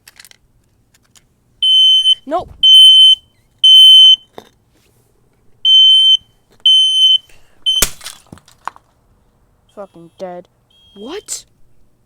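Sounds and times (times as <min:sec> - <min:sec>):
smoke detector alarm beeps: 0:01.6 - 0:04.2, 0:05.6 - 0:07.9, 0:09.8 - 0:11.4.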